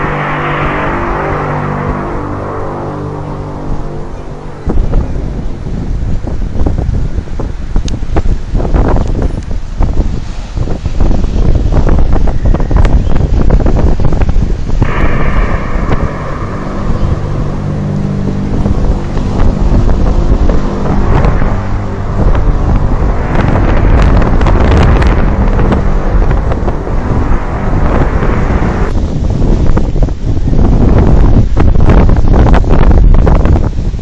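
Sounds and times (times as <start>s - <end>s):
high drawn-out tone: 0.0s - 7.0s, 14.8s - 29.9s
low steady hum: 0.0s - 8.0s, 14.8s - 30.2s
wind buffeting microphone: 0.0s - 34.0s.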